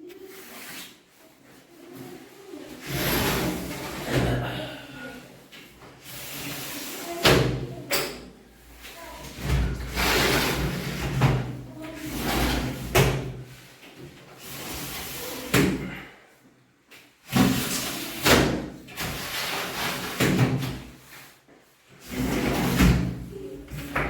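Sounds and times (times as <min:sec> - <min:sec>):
frames sliding and rubbing: 0:02.0 - 0:04.5, 0:08.8 - 0:13.7, 0:21.0 - 0:24.0.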